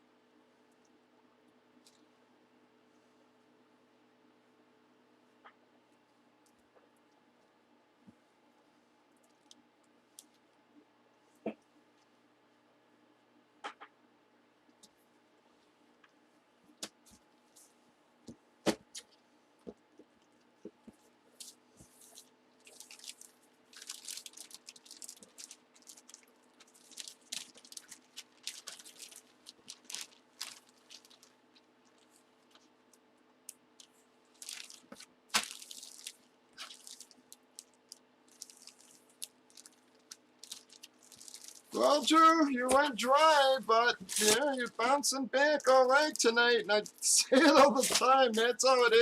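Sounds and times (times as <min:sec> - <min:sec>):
plastic packaging crinkling: 0:21.4 - 0:32.7, 0:33.8 - 0:44.8, 0:45.6 - 0:48.9.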